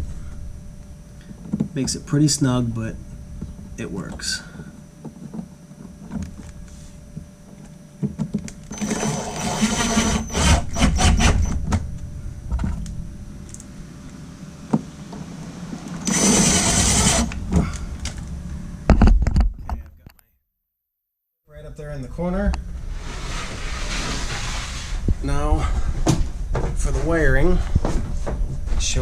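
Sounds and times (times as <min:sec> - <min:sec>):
cordless drill whining: 0:08.7 - 0:11.6, 0:16.0 - 0:17.4.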